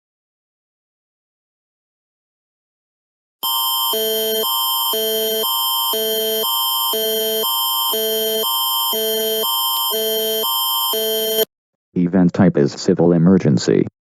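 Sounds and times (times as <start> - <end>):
electronic alarm tone switching chords: 3.4 - 11.5.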